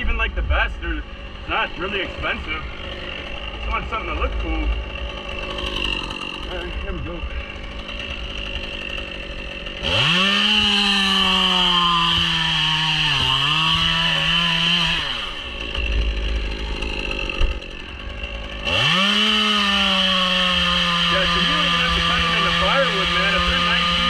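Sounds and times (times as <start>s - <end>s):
chainsaw cutting wood: 0.0s - 24.0s
chainsaw revving and idling: 0.0s - 24.0s.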